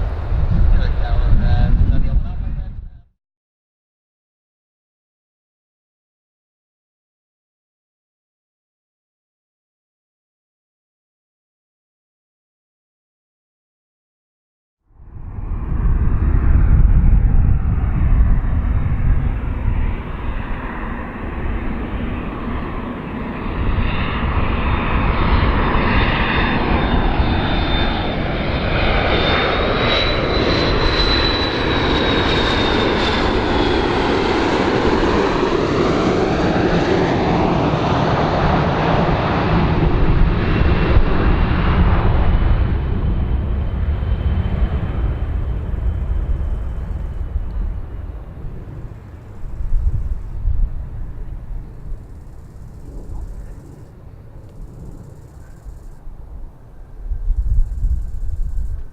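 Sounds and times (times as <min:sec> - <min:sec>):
airplane engines roaring: 0:00.0 - 0:03.1, 0:14.9 - 0:58.9.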